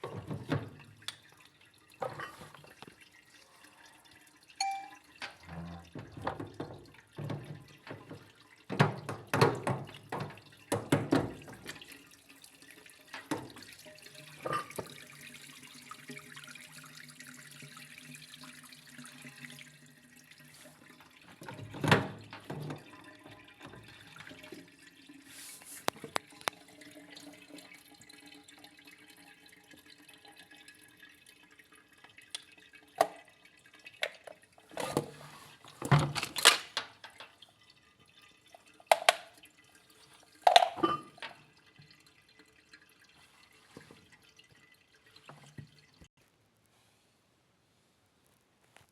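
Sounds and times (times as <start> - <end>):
water splashing and dripping: 0.0 - 34.7
parts knocking and clattering: 34.0 - 37.3, 38.9 - 39.3, 40.5 - 41.4.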